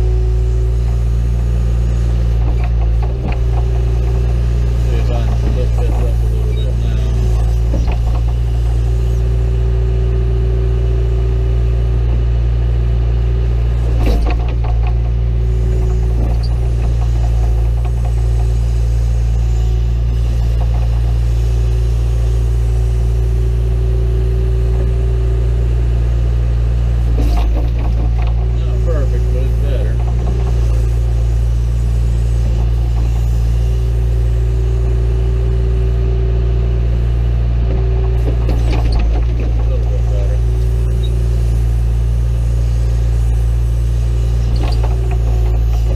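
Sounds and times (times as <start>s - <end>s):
backhoe diesel engine running: 0.0s - 45.9s
clatter of knocks: 7.5s - 8.4s.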